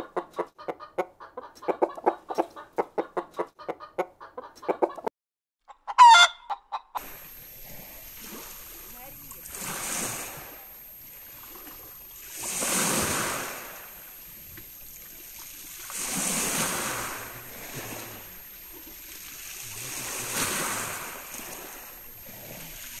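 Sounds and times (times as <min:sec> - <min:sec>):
sea waves breaking ashore: 0:07.0 - 0:23.0.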